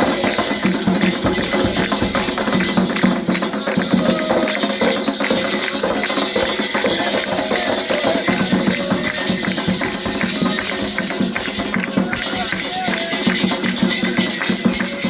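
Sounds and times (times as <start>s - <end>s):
hand drums beaten fast: 0.0s - 15.0s
voices singing: 5.9s - 9.7s.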